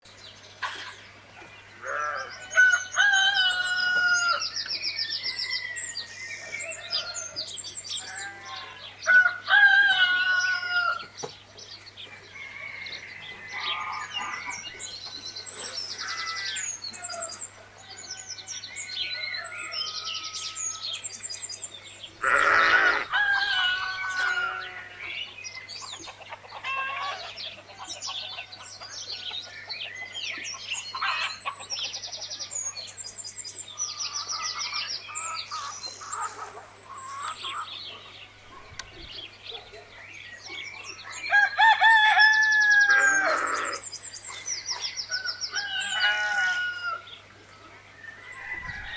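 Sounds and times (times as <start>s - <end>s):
roosters crowing: 1.6s - 11.2s, 12.0s - 14.8s, 15.7s - 21.2s, 22.2s - 25.2s, 41.2s - 44.0s, 45.0s - 47.3s, 48.0s - 48.9s
small birds chirping: 11.0s - 46.0s.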